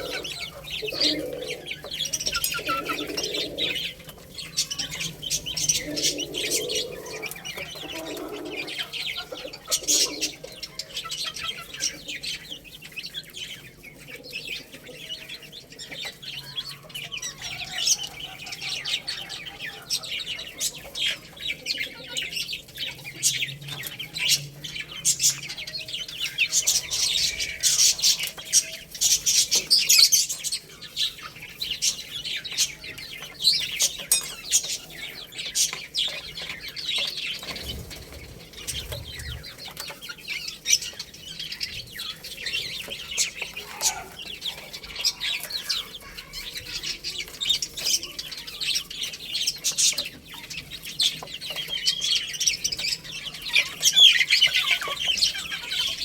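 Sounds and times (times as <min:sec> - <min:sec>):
baby chicks peeping: 0:00.0 - 0:56.0.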